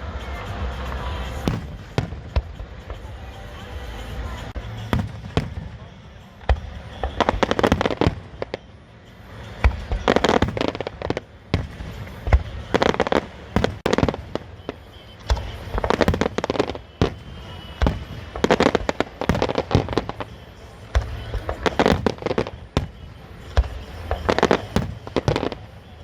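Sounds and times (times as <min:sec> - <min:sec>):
fireworks crackling bangs: 0:00.0 - 0:26.0
deep firework booms: 0:04.8 - 0:08.6, 0:09.6 - 0:25.7.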